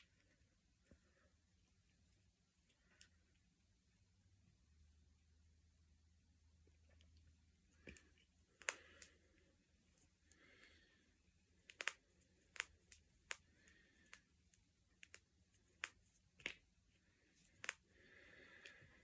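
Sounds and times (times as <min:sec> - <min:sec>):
knuckles cracking: 0:07.8 - 0:09.2, 0:11.6 - 0:14.3, 0:14.9 - 0:16.6, 0:17.4 - 0:18.8.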